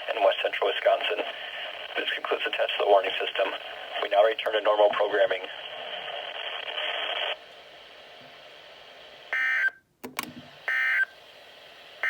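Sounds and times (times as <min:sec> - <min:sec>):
radio crackle: 0:00.0 - 0:09.4.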